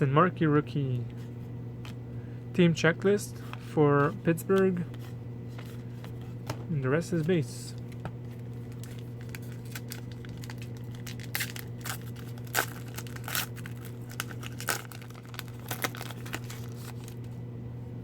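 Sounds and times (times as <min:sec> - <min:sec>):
steady low hum: 0:00.0 - 0:18.0
wrapper tearing and crinkling: 0:08.4 - 0:17.3.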